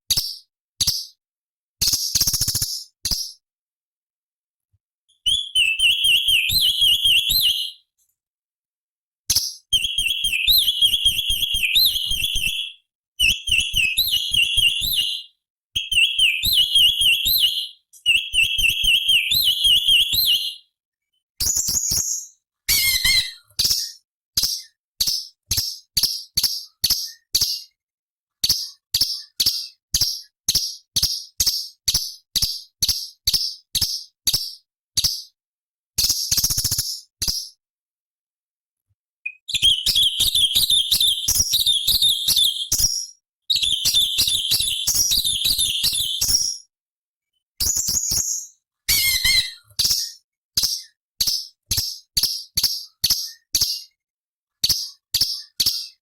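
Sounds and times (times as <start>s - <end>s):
bird warbling song: 5.2s - 7.8s, 9.4s - 20.6s, 39.3s - 46.6s.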